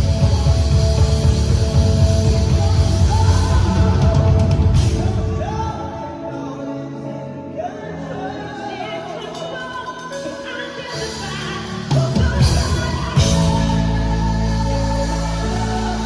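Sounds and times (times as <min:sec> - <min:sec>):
drums and bass: 0:00.0 - 0:05.8, 0:11.0 - 0:16.0
gospel band playing: 0:00.0 - 0:16.0
person singing: 0:00.0 - 0:16.0.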